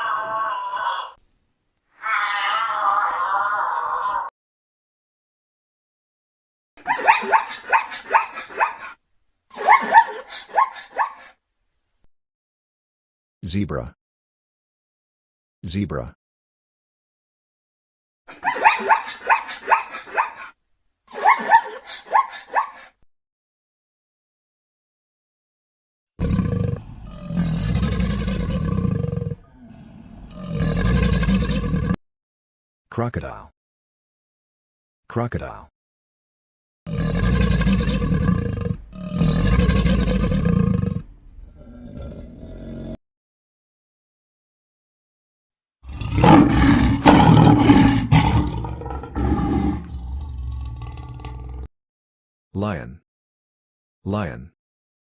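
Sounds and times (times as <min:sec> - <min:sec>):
lion roaring: 0:26.2 - 0:32.0, 0:36.9 - 0:43.0, 0:45.8 - 0:51.7
low animal growl: 0:26.2 - 0:32.0, 0:36.9 - 0:43.0, 0:45.8 - 0:51.7.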